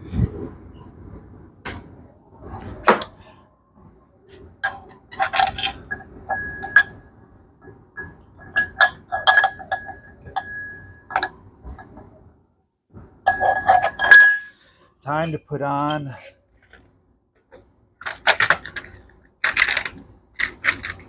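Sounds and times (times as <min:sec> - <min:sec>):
metal parts clinking: 0:18.0 - 0:21.0.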